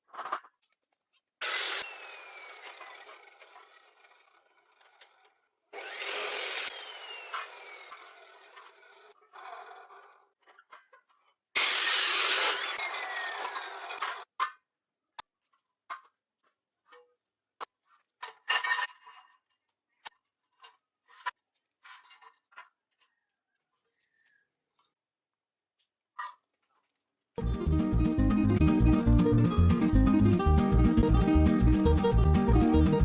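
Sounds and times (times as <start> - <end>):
loud rasping tool burst: 1.4 - 4.8, 5.8 - 9.2, 11.6 - 14.2.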